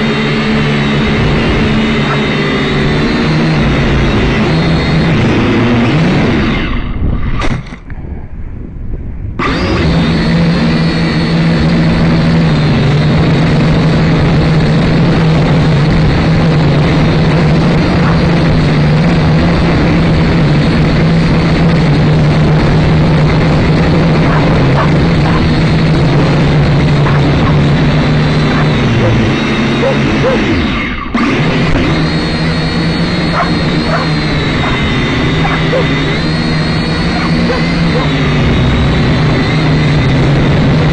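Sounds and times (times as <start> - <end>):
quadcopter propellers whirring: 0.0 - 40.9.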